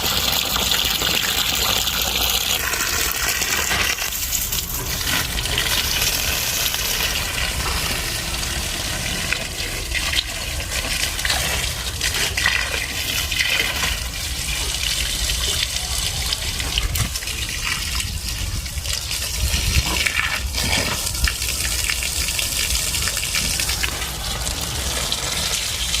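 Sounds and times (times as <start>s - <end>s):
water gushing and splashing: 0.0s - 26.0s.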